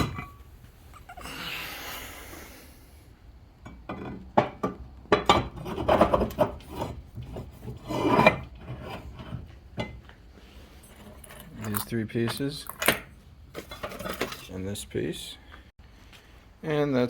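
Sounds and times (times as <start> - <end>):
metal scraping rasp: 5.6 - 9.5
metal parts clanking: 10.8 - 14.6.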